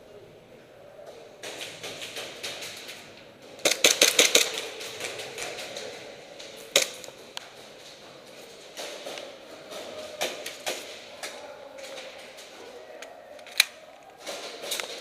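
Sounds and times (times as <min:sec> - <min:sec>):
airsoft guns firing: 0:03.6 - 0:07.1.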